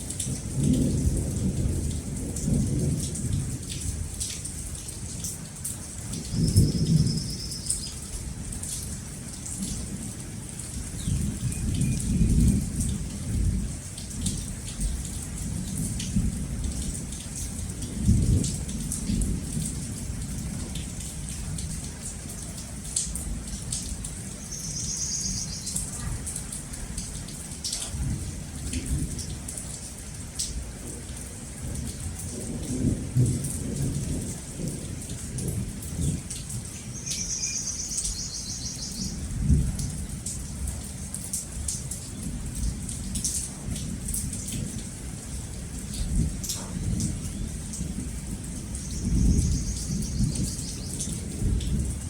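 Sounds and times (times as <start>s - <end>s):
steady rain falling: 0.0s - 52.0s
low rolls of thunder: 0.2s - 4.5s, 10.8s - 21.9s, 30.6s - 36.8s, 39.1s - 40.9s, 41.6s - 52.0s.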